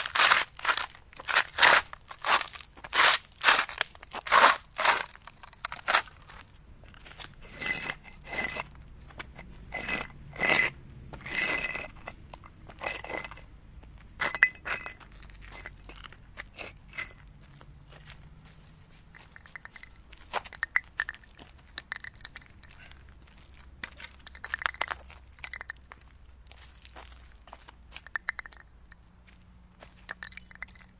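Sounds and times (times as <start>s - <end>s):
objects crunching and clattering: 0.0s - 6.2s.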